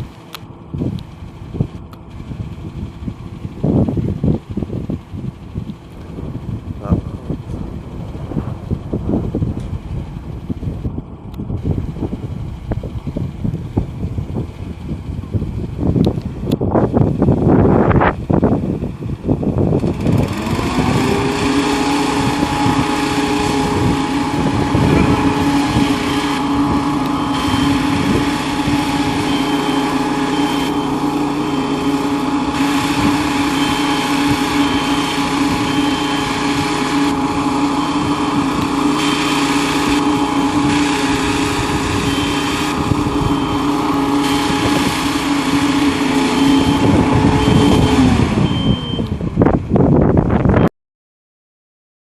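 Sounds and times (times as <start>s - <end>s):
ventilator fan and motor hum: 0.0s - 50.6s.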